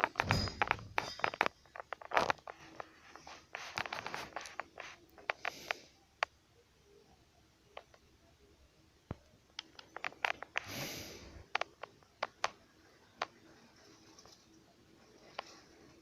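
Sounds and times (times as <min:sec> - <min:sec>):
sharp clicks and ticks: 0:09.1 - 0:10.7.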